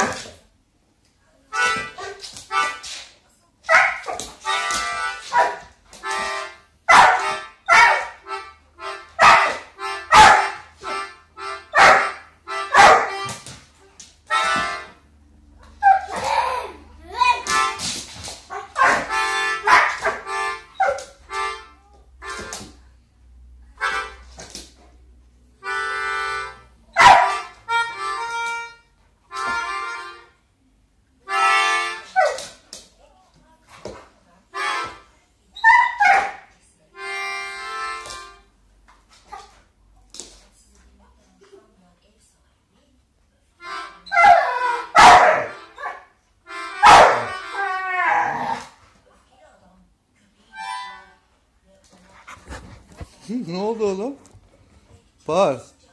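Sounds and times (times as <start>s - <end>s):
music: 25.6s - 30.4s, 31.3s - 32.1s, 37.0s - 38.4s, 46.5s - 47.8s.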